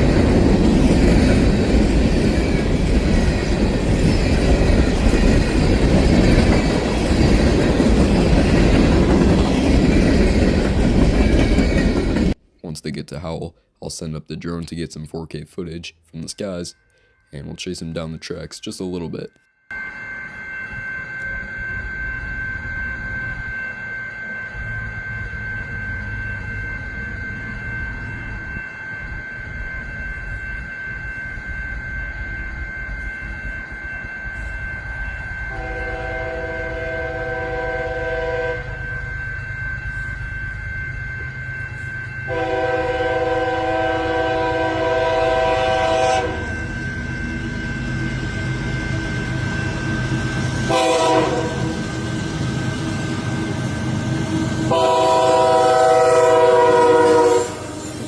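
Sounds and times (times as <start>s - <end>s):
freight train rumbling: 0.0s - 12.8s, 19.7s - 58.0s
locomotive horn blasts: 35.5s - 38.7s, 42.3s - 46.6s, 50.7s - 51.7s, 54.7s - 57.8s.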